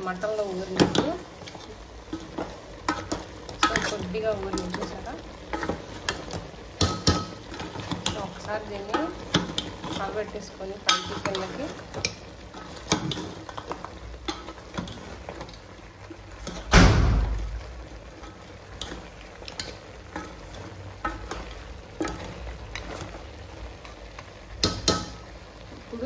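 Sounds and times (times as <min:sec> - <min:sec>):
spoon stirring in cooking pot: 0:00.1 - 0:16.7, 0:17.8 - 0:25.9
loud knock: 0:16.7 - 0:17.4.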